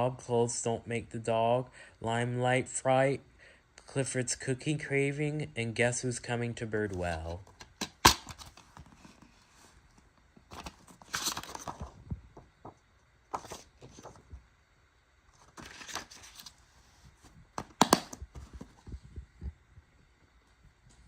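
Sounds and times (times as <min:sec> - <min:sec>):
plastic cases rustling: 0:07.0 - 0:14.4, 0:15.3 - 0:19.0.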